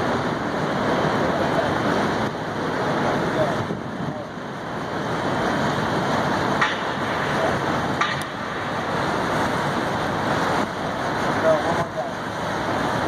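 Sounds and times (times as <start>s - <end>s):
rushing water: 0.0s - 13.0s
wind: 0.0s - 13.0s.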